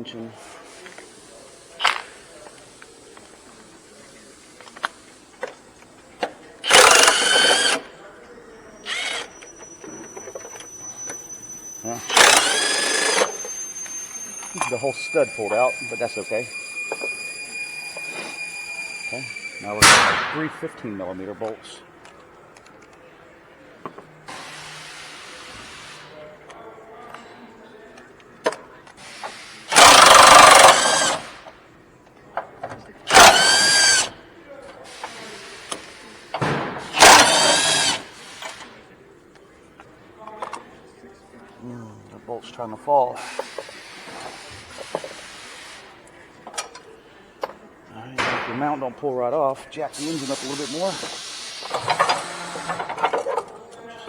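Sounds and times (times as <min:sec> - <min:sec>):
power wrench spinning: 0:06.6 - 0:07.9, 0:08.7 - 0:19.8, 0:29.0 - 0:31.5, 0:33.1 - 0:34.2, 0:36.9 - 0:38.7, 0:50.0 - 0:53.4.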